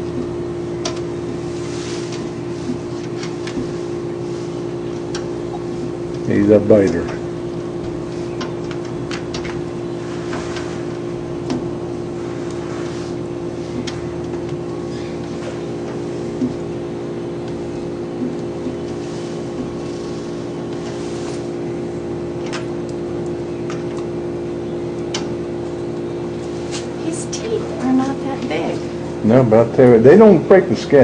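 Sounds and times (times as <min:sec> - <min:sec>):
steady mechanical hum: 0:00.0 - 0:31.0.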